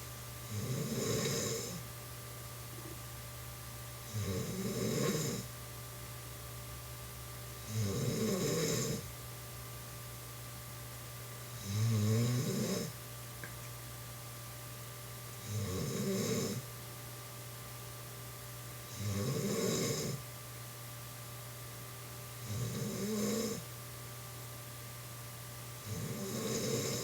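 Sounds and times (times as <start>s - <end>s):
woman snoring: 0.5s - 1.8s, 4.1s - 5.5s, 7.6s - 9.1s, 11.6s - 13.0s, 15.4s - 16.7s, 18.9s - 20.2s, 22.4s - 23.6s, 25.8s - 27.0s.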